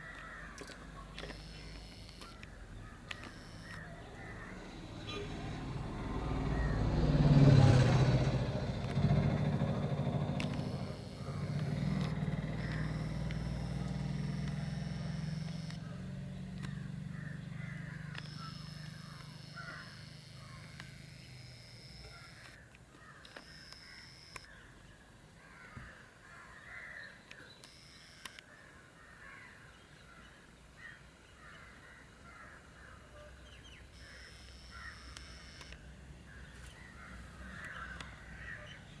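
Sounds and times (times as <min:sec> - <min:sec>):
birds calling: 0:00.0 - 0:39.0
vehicle rumble passing: 0:03.8 - 0:22.0.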